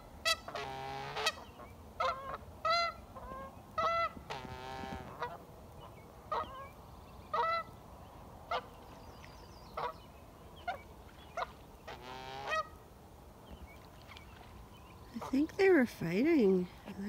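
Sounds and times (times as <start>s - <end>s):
geese honking: 0.0s - 7.8s, 9.7s - 12.8s.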